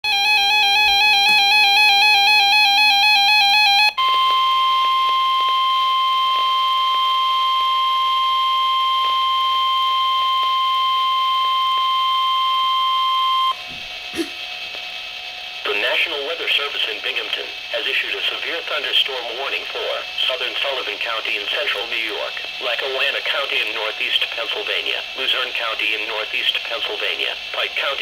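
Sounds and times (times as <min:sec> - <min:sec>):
warbling radio alarm: 0:00.0 - 0:13.8
steady single-pitch alarm tone: 0:00.0 - 0:14.0.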